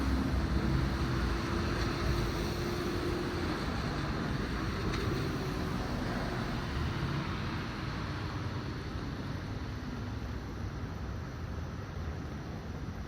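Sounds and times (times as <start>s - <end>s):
train rushing past: 0.0s - 9.8s
train hum: 0.0s - 13.0s.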